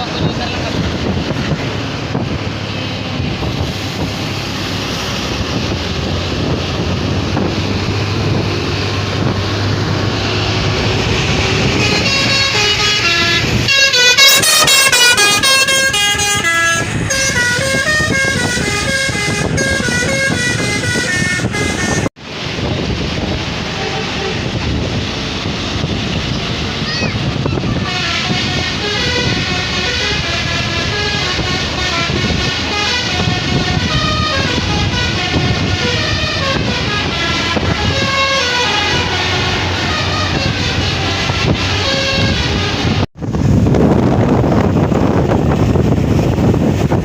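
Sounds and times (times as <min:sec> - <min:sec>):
heavy vehicle engine: 0:00.0 - 0:47.0
road noise: 0:00.0 - 0:47.0
bus horn playing a tune: 0:10.8 - 0:22.1, 0:23.6 - 0:24.9, 0:27.4 - 0:43.1.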